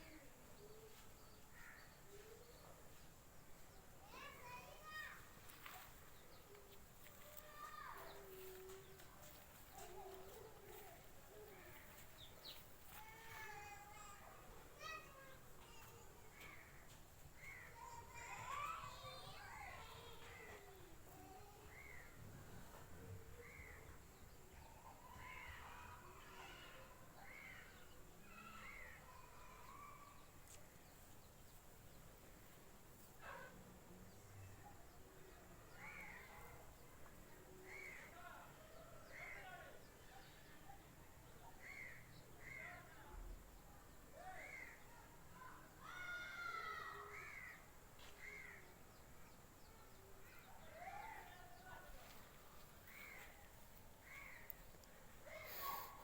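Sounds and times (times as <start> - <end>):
outdoor background noise: 0.0 - 56.0
faint bird calls: 44.2 - 56.0.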